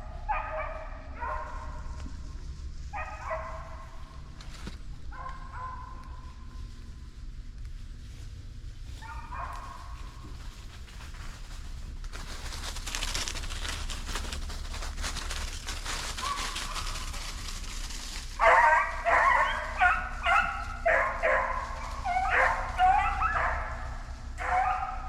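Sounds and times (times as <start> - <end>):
hound baying: 0.0 - 2.1, 2.9 - 4.2, 5.1 - 6.3, 9.0 - 10.3, 16.1 - 17.4, 18.3 - 25.0
rustling of brush and leaves: 0.0 - 25.0.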